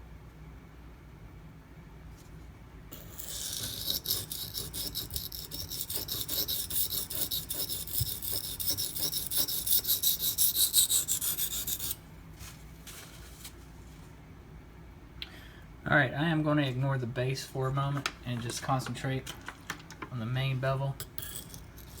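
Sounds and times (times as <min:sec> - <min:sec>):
sharpening stone rasping on knife: 0:03.0 - 0:12.0, 0:21.0 - 0:22.0.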